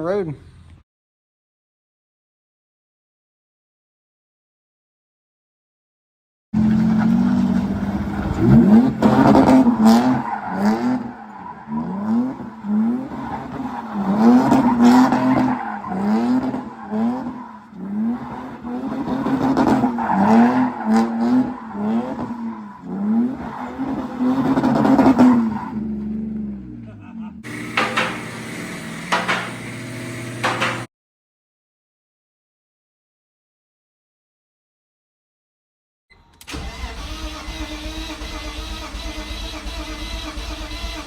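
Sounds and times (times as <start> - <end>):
car engine revving: 6.6 - 30.9, 36.5 - 41.0.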